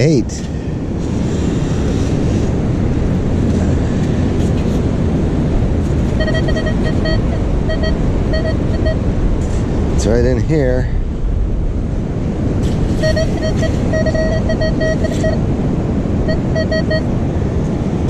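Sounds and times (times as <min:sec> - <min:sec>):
wind and surf noise: 0:00.0 - 0:18.0
metal detector beeps: 0:06.2 - 0:09.0, 0:13.0 - 0:15.4, 0:16.3 - 0:17.1.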